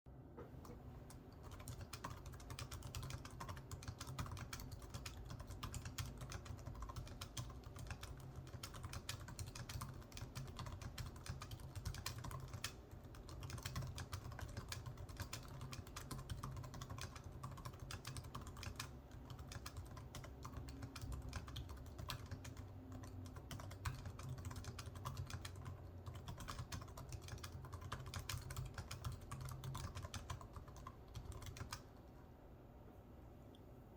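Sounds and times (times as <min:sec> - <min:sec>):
laptop keyboard typing: 0:00.4 - 0:32.0.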